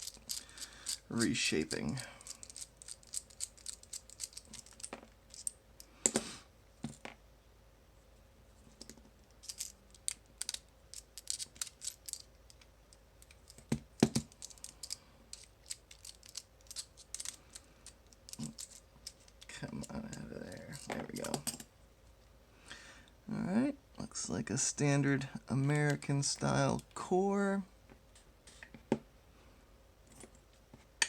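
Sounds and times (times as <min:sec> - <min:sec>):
metallic clicks of padlock parts: 0:00.0 - 0:01.0, 0:02.2 - 0:05.6, 0:09.4 - 0:20.2.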